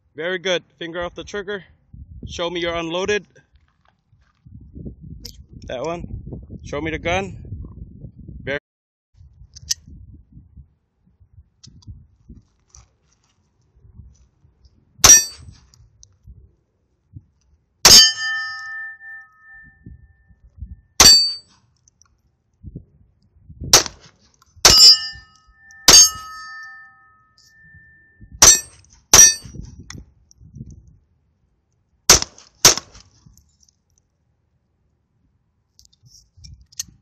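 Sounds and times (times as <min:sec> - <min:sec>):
steel target ringing ding: 0:17.9 - 0:19.8, 0:24.7 - 0:29.5
pistol shots: 0:23.7 - 0:24.1, 0:32.1 - 0:33.0.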